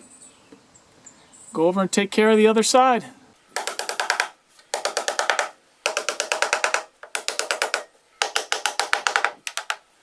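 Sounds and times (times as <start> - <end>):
hammer tapping nails: 3.5 - 9.9.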